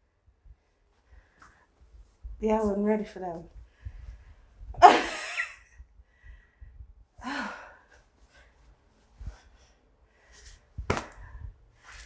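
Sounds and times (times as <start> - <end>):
woman's breathy sighs: 6.2 - 8.0.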